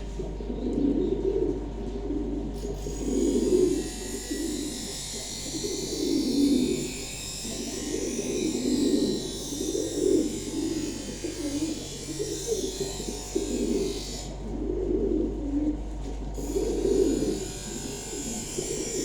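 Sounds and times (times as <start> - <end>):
pigeons cooing: 0.0 - 19.0.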